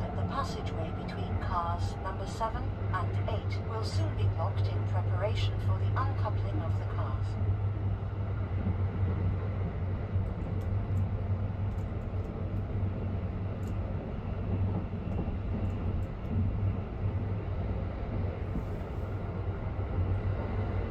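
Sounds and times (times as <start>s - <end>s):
train low rumble and hum: 0.0s - 20.9s
faint light ticks: 10.2s - 12.7s, 13.6s - 13.8s.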